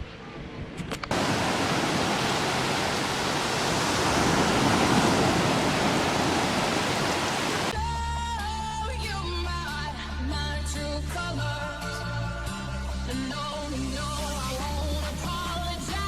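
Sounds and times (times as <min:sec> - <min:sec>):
loud rushing noise: 0:01.1 - 0:07.7.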